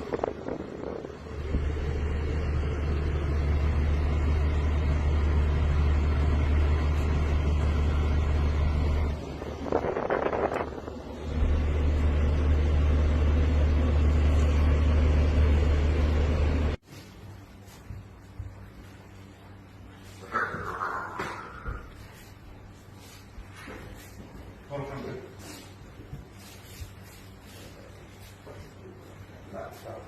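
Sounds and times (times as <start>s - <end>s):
low motor hum: 0.0s - 16.8s.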